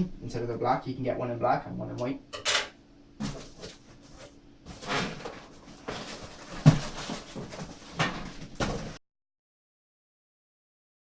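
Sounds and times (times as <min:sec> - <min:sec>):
rustling scrapes: 0:03.2 - 0:09.0.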